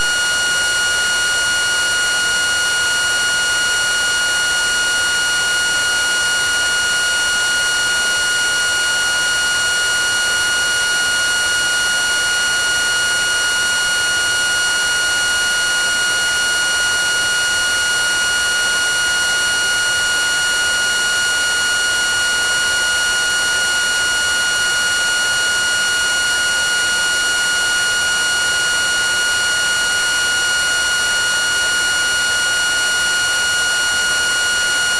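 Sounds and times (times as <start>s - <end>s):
high buzzing tone: 0.0s - 6.3s.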